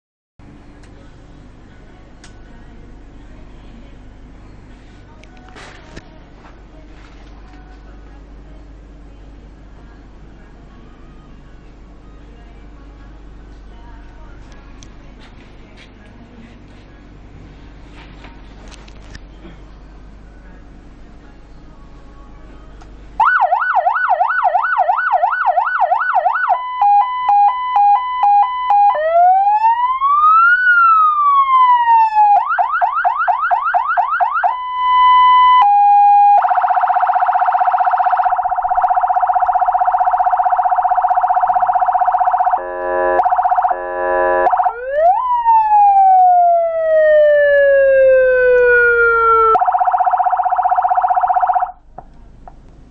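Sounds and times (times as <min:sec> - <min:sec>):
electronic siren: 0:23.2 - 0:51.8
buzzing horn tone: 0:42.2 - 0:44.7.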